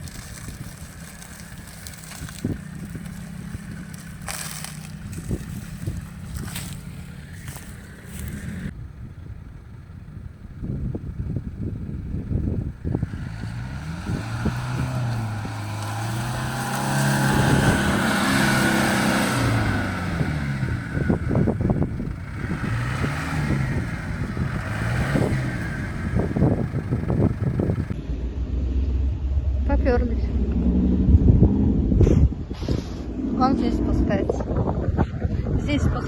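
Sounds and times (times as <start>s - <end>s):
suv engine revving: 0.0s - 8.8s, 9.5s - 28.0s.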